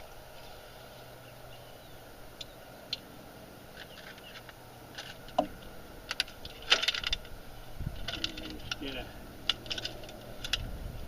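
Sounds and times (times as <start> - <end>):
small objects clicking and handled: 3.7 - 7.4, 8.0 - 10.7.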